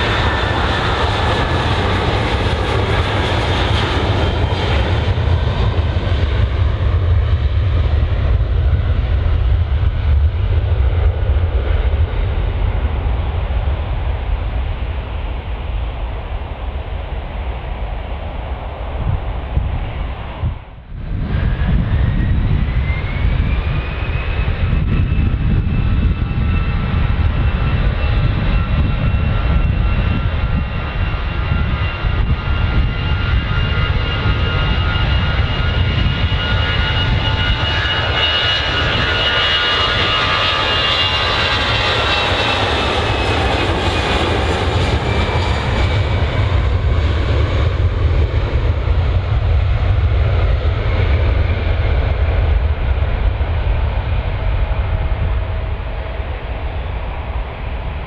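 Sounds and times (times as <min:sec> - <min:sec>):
airliner engines whining: 0:00.0 - 0:58.0
low rumble: 0:00.0 - 0:58.0.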